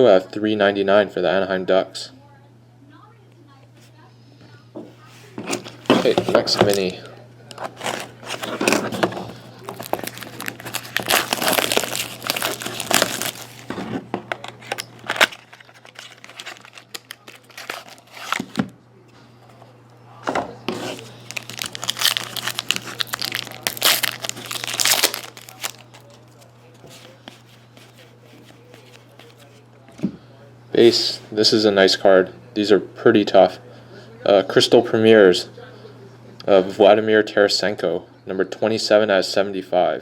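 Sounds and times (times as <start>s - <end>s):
faint low hum: 0.0s - 38.6s
pack wrapper crinkling and tearing: 9.5s - 13.7s, 14.4s - 18.6s, 20.8s - 26.4s.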